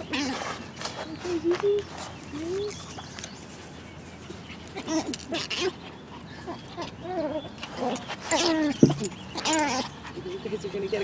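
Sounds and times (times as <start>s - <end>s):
puppy whining: 4.8s - 10.0s.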